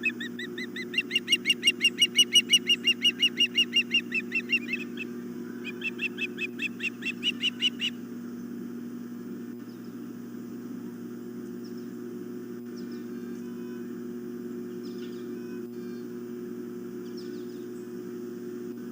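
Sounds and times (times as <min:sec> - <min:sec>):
ospreys chirping: 0:00.0 - 0:08.0
low electrical hum: 0:00.0 - 0:18.9.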